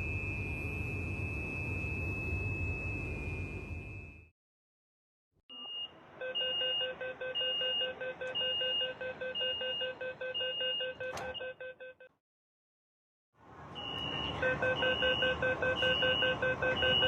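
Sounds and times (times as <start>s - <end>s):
pulsing electronic warning beep: 5.5s - 12.0s, 13.8s - 17.0s.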